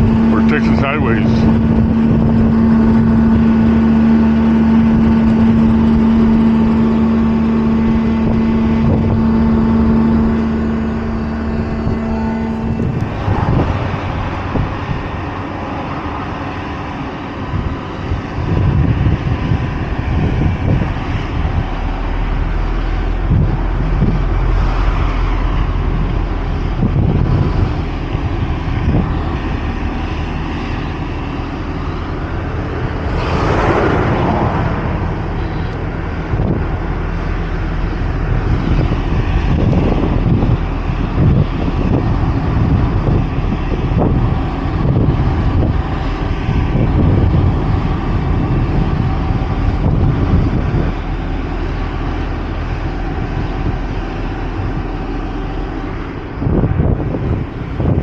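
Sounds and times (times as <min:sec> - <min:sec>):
heavy diesel engines droning: 0:00.0 - 0:58.0
rushing whoosh: 0:08.1 - 0:17.7, 0:18.5 - 0:58.0.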